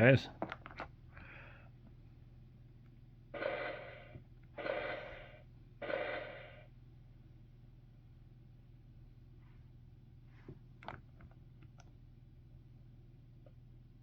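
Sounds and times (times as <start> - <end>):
toy electronic sound effect: 3.4 - 6.6.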